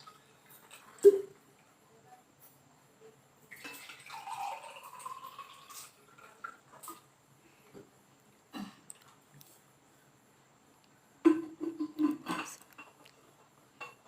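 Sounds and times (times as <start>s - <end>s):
water pouring into container: 3.5s - 6.6s.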